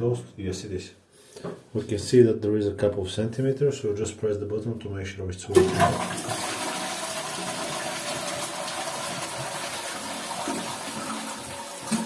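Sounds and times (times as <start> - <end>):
toilet flushing: 5.5 - 12.0.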